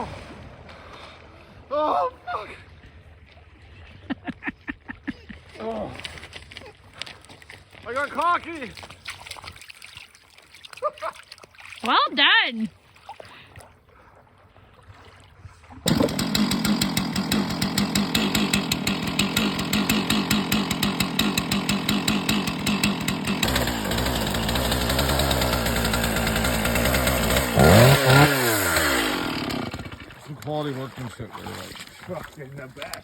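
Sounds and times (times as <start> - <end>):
outboard motor running: 15.8 - 32.1.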